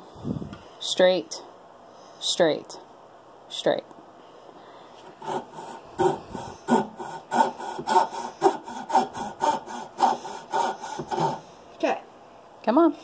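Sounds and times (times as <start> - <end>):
hand saw cutting wood: 5.2 - 11.5.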